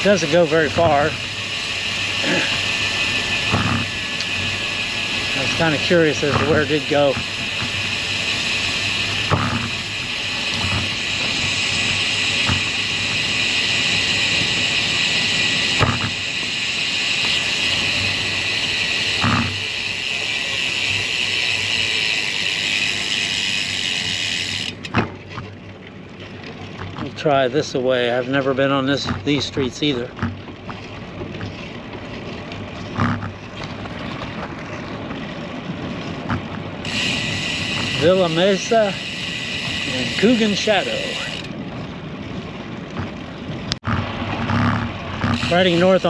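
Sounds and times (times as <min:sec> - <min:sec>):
rushing wind: 0:00.0 - 0:19.7
bike tyre noise: 0:00.0 - 0:25.5, 0:36.2 - 0:41.6, 0:42.9 - 0:46.0.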